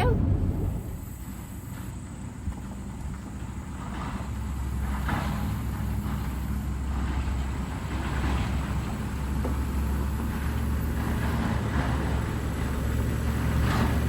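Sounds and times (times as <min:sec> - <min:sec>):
road noise: 0:00.0 - 0:14.0
vehicle engine hum: 0:00.0 - 0:14.0.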